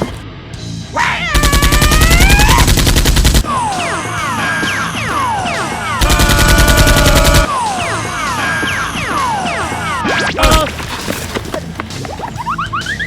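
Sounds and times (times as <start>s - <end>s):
automatic gunfire bursts: 1.4s - 3.4s, 6.0s - 7.5s.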